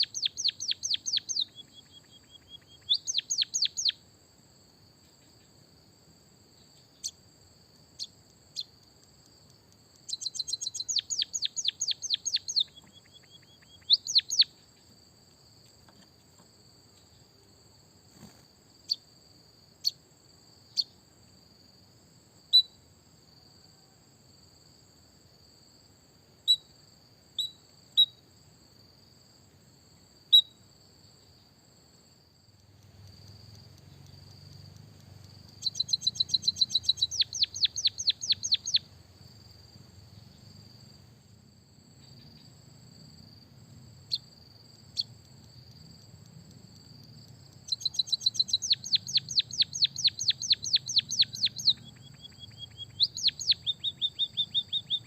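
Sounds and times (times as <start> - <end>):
songbird chirping: 0.0 - 41.2, 41.8 - 55.0.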